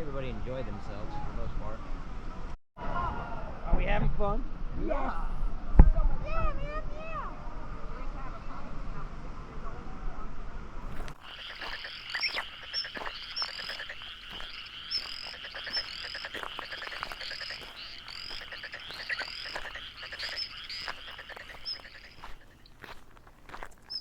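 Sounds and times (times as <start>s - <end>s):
frogs chirping chorus: 10.8s - 24.0s.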